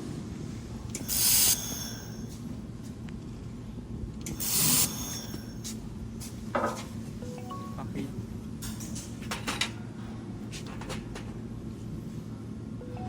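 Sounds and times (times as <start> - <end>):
steady low hum: 0.1 - 8.7
laser welder high-pitched hiss: 1.0 - 2.4, 4.3 - 5.8.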